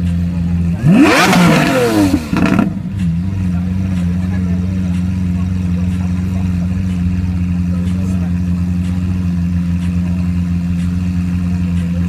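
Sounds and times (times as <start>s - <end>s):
car engine running steadily: 0.0s - 12.0s.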